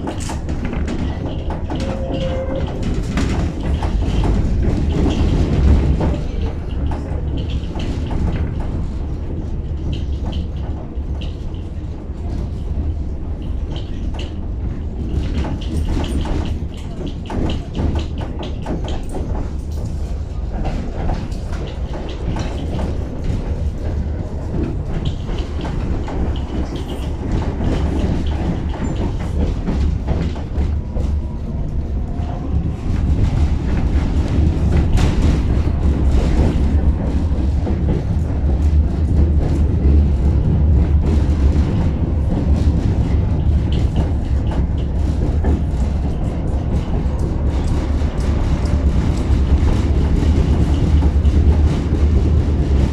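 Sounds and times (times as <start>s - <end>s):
tram rumbling: 0.0s - 52.9s
wheels clattering on track: 0.0s - 52.9s.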